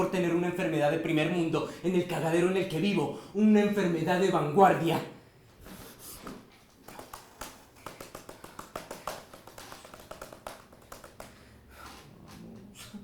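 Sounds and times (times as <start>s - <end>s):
light taps: 6.2s - 11.5s.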